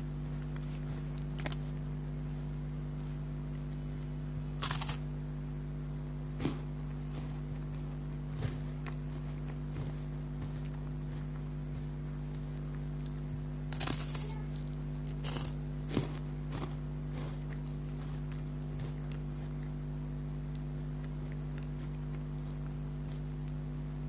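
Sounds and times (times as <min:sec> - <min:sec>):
biscuits crunching while chewed: 0:00.0 - 0:05.4, 0:06.1 - 0:24.0
steady low hum: 0:00.0 - 0:24.0.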